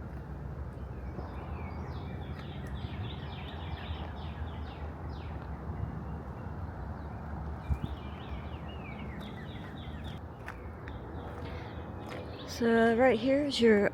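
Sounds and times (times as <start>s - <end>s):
songbird singing falling notes: 0.7s - 11.5s.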